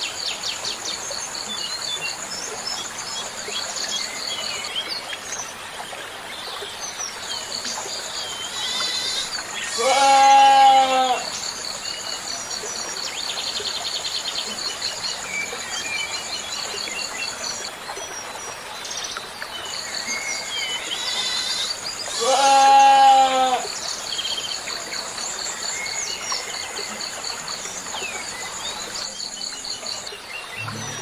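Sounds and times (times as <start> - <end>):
insects trilling: 8.5 - 12.4
goat bleating: 9.7 - 11.2, 22.2 - 23.6
birds chirping: 30.4 - 31.0.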